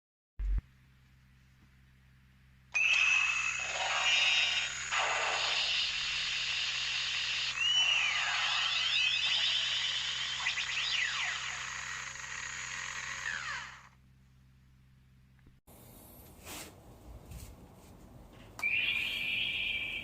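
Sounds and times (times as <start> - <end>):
toy belt electronic sound effect: 2.8 - 14.0, 18.6 - 20.0.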